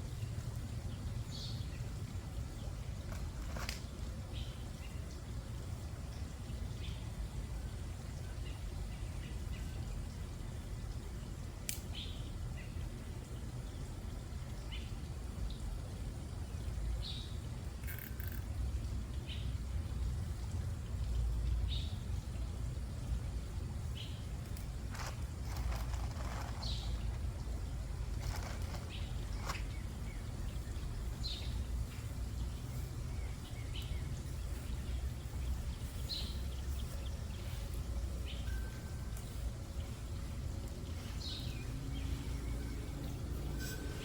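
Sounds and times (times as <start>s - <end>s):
birds chirping: 23.9s - 44.0s.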